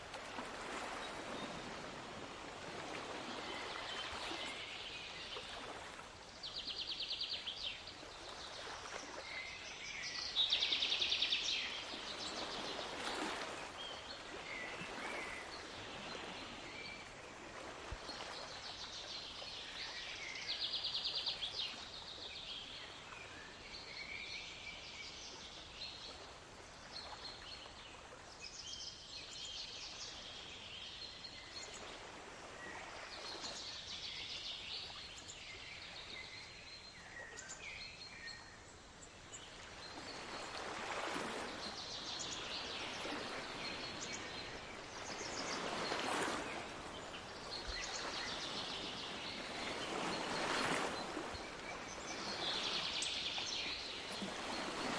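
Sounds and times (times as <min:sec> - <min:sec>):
ocean waves washing in: 0:40.0 - 0:54.9.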